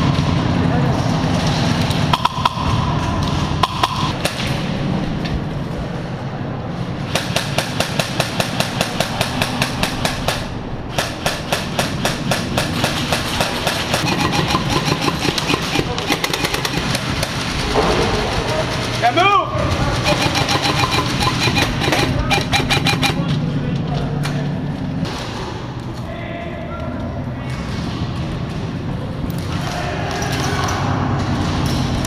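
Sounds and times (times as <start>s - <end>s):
airsoft gun rapid fire: 7.1s - 17.6s, 19.9s - 23.3s.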